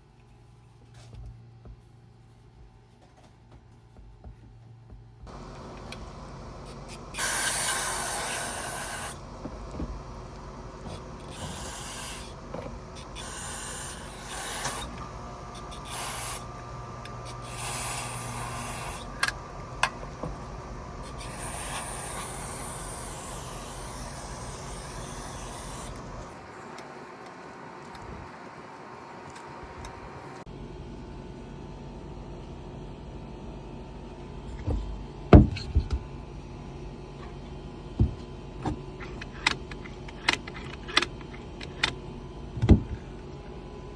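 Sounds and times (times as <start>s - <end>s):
aerosol spray can hissing: 7.1s - 9.2s, 10.9s - 12.4s, 13.0s - 14.9s, 15.6s - 16.5s, 17.3s - 19.1s, 21.0s - 26.2s.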